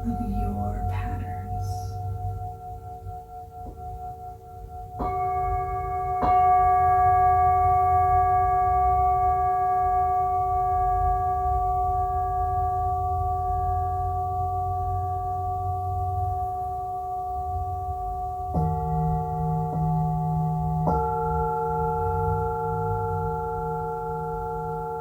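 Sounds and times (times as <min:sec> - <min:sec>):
singing bowls ringing: 0:00.0 - 0:17.9.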